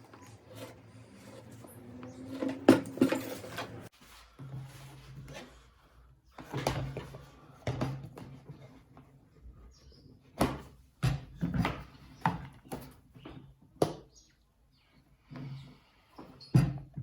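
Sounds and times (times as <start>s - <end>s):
scraping of wood and tools: 0.0s - 5.6s.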